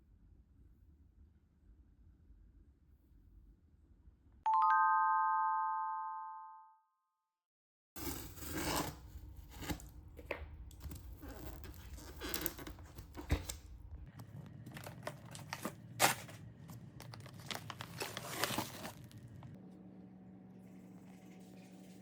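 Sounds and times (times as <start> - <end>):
packaging crinkling and tearing: 8.0 - 19.5.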